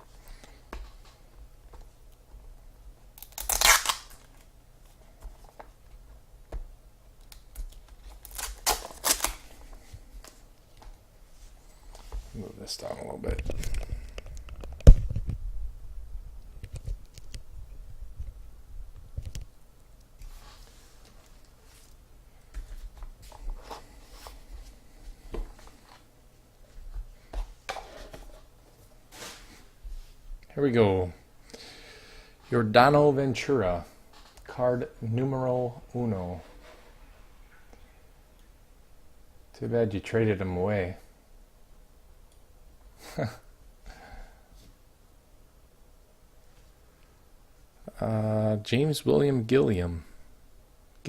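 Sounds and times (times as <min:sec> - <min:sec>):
faint low hum: 0:00.0 - 0:51.0
packaging ripping: 0:03.2 - 0:04.5, 0:07.3 - 0:09.5.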